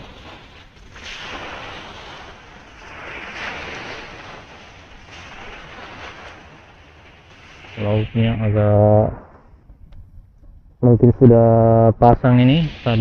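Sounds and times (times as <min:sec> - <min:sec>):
sea waves washing onto shore: 0:00.0 - 0:09.4, 0:12.2 - 0:13.0
wind buffeting microphone: 0:00.0 - 0:13.0.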